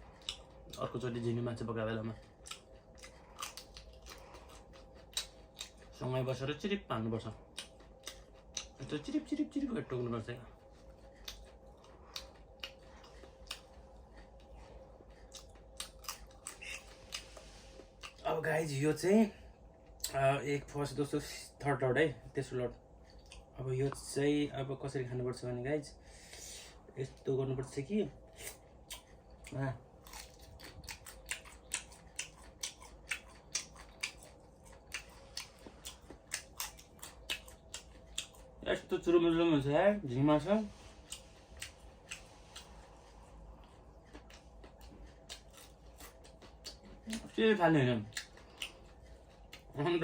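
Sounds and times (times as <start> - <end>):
shrimp crunching and chewing: 0.0 - 1.3, 1.9 - 6.6, 7.2 - 18.4, 23.0 - 24.0, 28.2 - 39.0, 40.9 - 50.0
person crunching shrimp shells: 2.4 - 5.9, 28.4 - 38.6.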